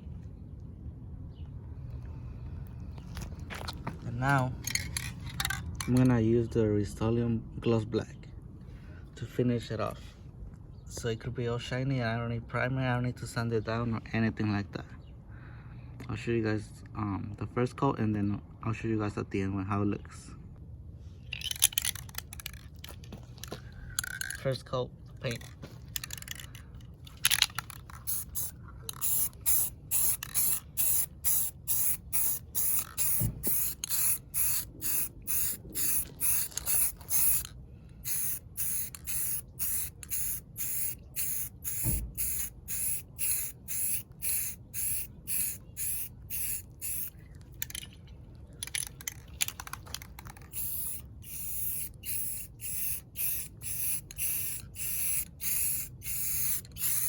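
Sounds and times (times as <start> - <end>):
spray paint can hissing: 27.7 - 47.8, 48.6 - 57.0.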